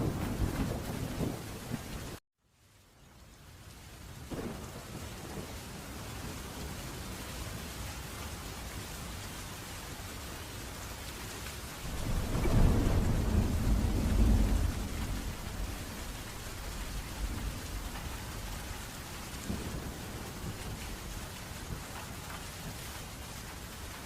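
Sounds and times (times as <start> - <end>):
rolling thunder: 0.0 - 2.2, 11.8 - 22.9
steady rain falling: 0.0 - 24.0.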